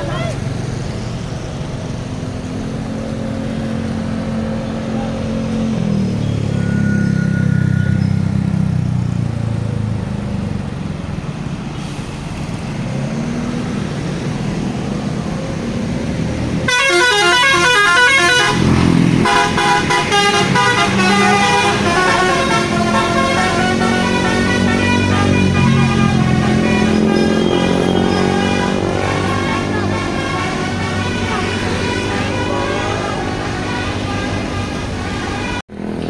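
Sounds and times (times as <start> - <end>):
bus engine rumbling: 0.0 - 36.0
musical air horn melody: 6.5 - 8.3, 16.7 - 35.6.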